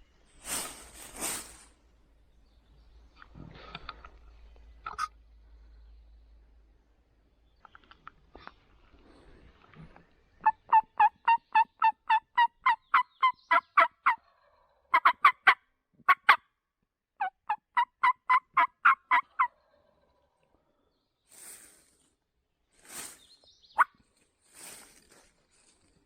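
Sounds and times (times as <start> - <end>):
turkey yelps: 10.4 - 16.4, 17.2 - 19.7.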